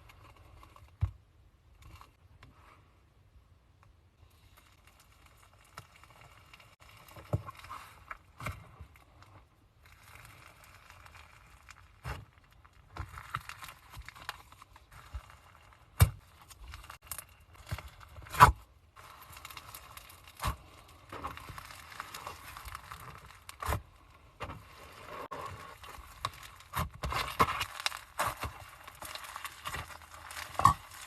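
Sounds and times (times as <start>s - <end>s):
slime squeezed wet crackling: 25.2s - 31.0s.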